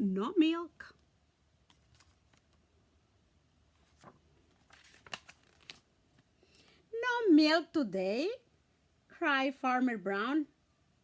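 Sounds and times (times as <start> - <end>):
soft page clicks: 1.6 - 2.6, 3.8 - 6.3
book pages rustling: 1.6 - 2.7, 3.7 - 6.3.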